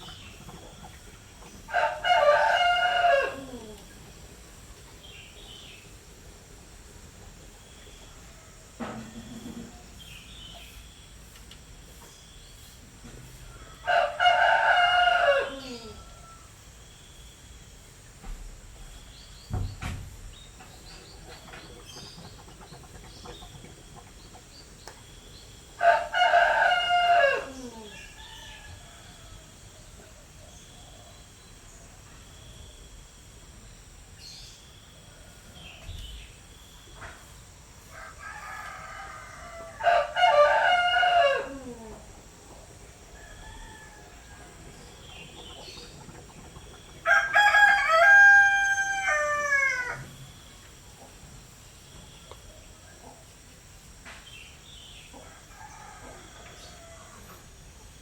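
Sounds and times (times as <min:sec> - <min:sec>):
rooster crowing: 0:01.7 - 0:03.9, 0:13.4 - 0:16.7, 0:25.7 - 0:30.0, 0:37.8 - 0:42.1, 0:43.1 - 0:44.9, 0:47.0 - 0:50.2, 0:55.2 - 0:57.5.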